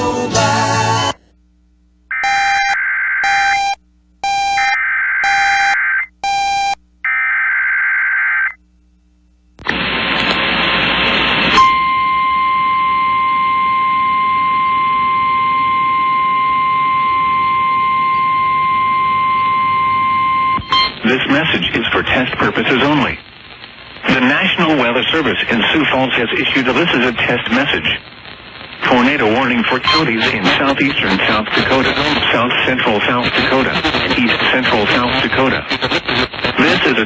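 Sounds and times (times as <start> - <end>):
screechy digital data bursts: 2.1 - 6.8
steady high alarm tone: 2.1 - 6.8, 11.6 - 20.9
radio static: 2.1 - 8.6, 9.6 - 11.8, 20.6 - 37.0.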